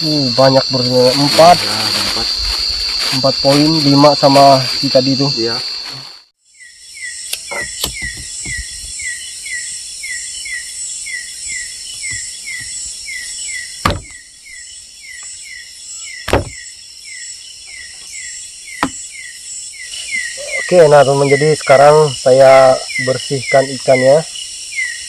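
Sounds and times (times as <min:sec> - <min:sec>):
insect chorus chirping: 0:00.0 - 0:25.0
sharp knocks: 0:13.8 - 0:14.2, 0:16.3 - 0:16.6, 0:18.8 - 0:19.0.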